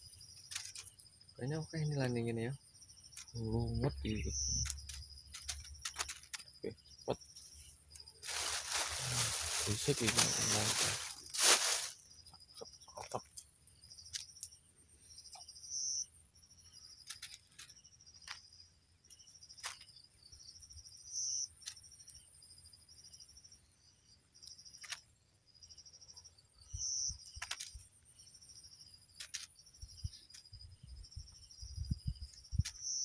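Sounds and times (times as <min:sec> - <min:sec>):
insects chirping: 0:00.0 - 0:33.0
sharp clicks: 0:04.3 - 0:06.5, 0:27.3 - 0:27.9.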